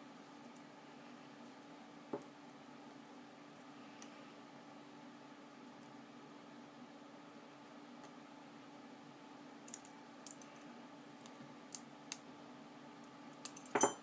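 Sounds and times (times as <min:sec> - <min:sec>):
sharp metallic clinks: 0:13.6 - 0:14.0.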